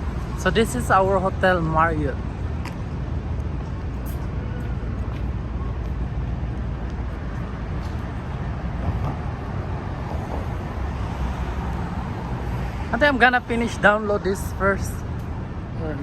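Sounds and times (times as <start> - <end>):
city traffic rumble: 0.0 - 16.0.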